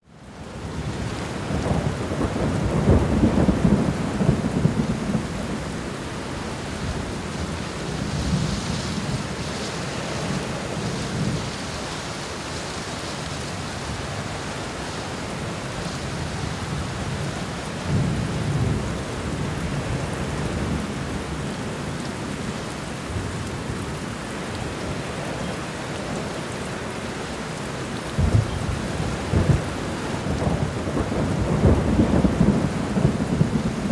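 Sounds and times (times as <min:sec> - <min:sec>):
heavy rain falling: 0:00.0 - 0:33.9
low rolls of thunder: 0:00.7 - 0:11.8, 0:15.4 - 0:21.5, 0:28.1 - 0:33.9.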